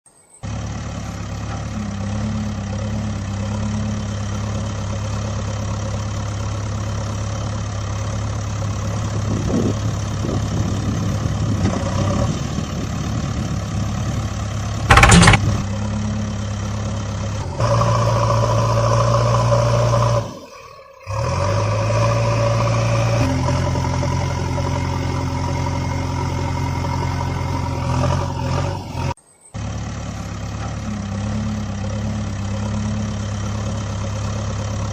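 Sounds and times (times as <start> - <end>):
engine idling: 0.4 - 11.6, 12.8 - 21.3, 28.8 - 34.9
loud short burst: 14.9 - 15.6.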